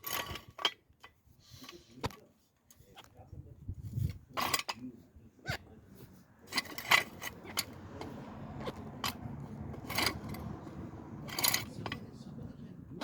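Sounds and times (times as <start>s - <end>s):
metal tools clinking: 0.0s - 1.8s, 4.1s - 4.9s, 6.4s - 12.2s.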